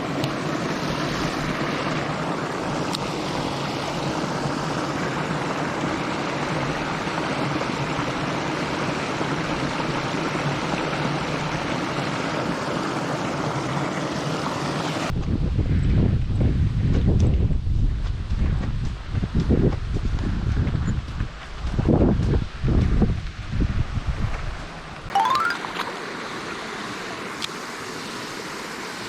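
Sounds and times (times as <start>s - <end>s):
stream water rushing: 0.0s - 15.1s, 25.1s - 29.0s.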